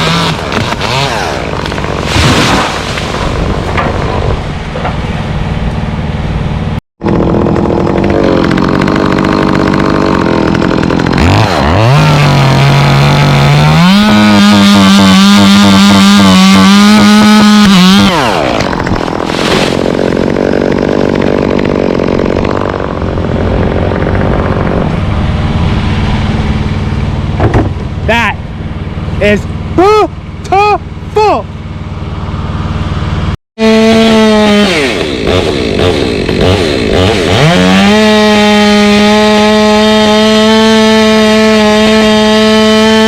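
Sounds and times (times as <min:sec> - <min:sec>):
chainsaw engine revving: 0:00.0 - 0:04.0, 0:07.0 - 0:27.4, 0:33.6 - 0:43.0.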